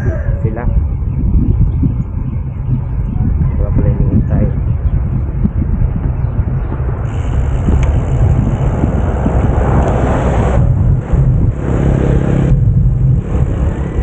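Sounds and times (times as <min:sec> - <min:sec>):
road noise: 0:00.0 - 0:14.0
vehicle engine running: 0:06.1 - 0:14.0.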